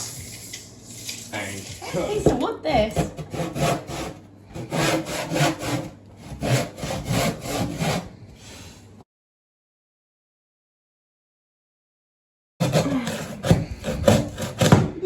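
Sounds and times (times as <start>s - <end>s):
handsaw cutting wood: 2.8s - 8.2s, 12.6s - 15.0s.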